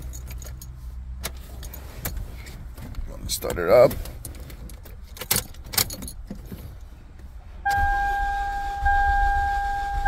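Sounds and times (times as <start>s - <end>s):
keys jingling and clicking: 0.0s - 0.7s, 4.6s - 6.4s.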